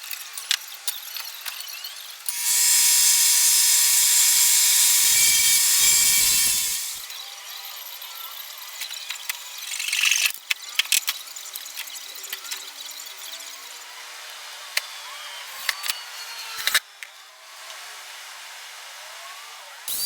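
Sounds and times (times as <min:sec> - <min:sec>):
short rushing hiss: 0:02.4 - 0:07.0.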